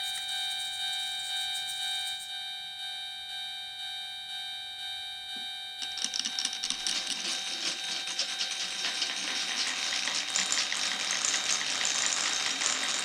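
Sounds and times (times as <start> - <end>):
electronic warning tone: 4.8 - 10.5
marbles rolling along track: 5.8 - 13.0.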